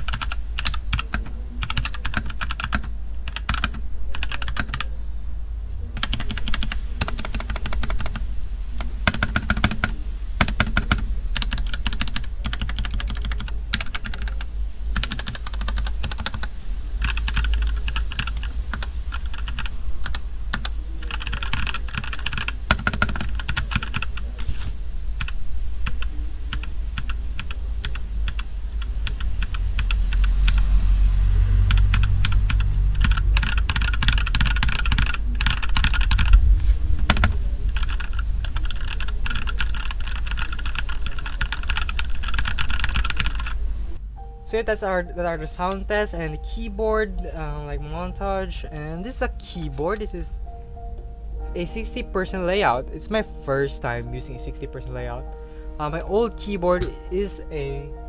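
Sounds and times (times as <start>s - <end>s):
mechanical keyboard typing: 0.0s - 5.0s, 6.0s - 30.7s, 31.7s - 36.4s, 37.0s - 43.6s
steady low hum: 0.0s - 58.0s.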